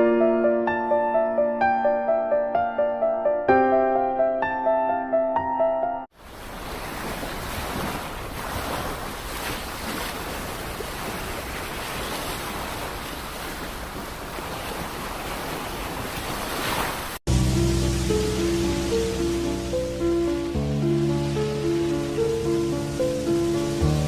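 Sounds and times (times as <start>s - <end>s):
piano music: 0.0s - 6.1s, 17.3s - 24.0s
wind: 6.1s - 24.0s
surf rushing: 6.2s - 24.0s.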